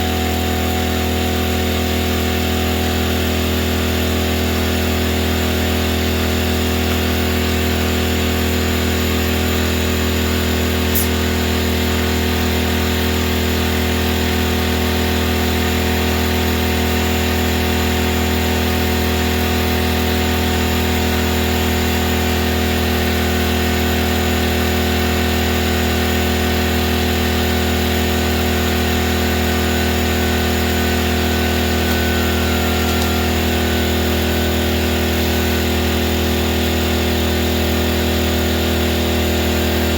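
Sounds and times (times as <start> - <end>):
air compressor running: 0.0 - 39.9
brief click: 11.0 - 11.2.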